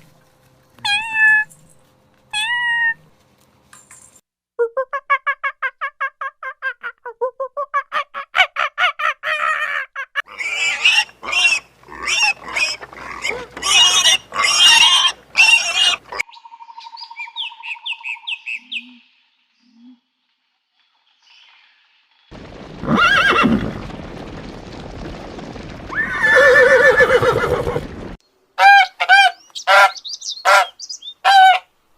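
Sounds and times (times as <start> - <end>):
loud harsh animal calls: 8.3 - 16.2.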